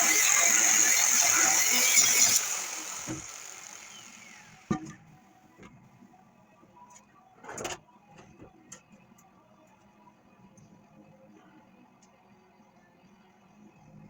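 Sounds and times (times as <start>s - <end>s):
angle grinder on steel: 0.0s - 4.7s.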